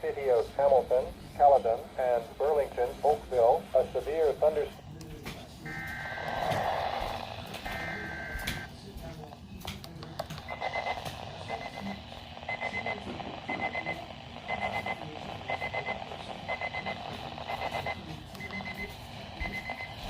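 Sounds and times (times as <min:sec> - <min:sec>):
high electronic beeps: 0:05.6 - 0:08.7, 0:10.5 - 0:20.0.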